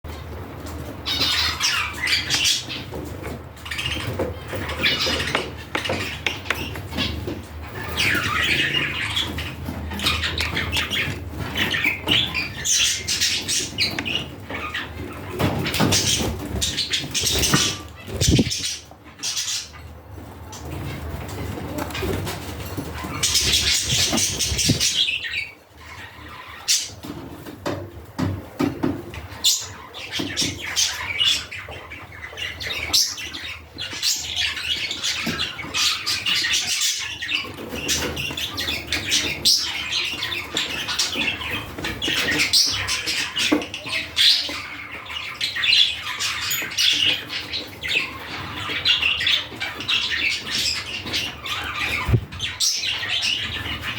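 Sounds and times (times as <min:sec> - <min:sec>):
budgerigars chattering and squawking: 0:00.1 - 0:53.9.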